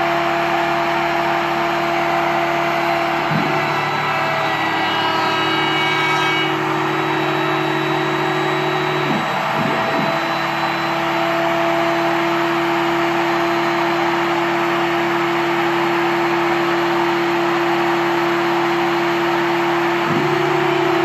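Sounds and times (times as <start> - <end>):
power tool motor whirring: 3.3 - 11.0.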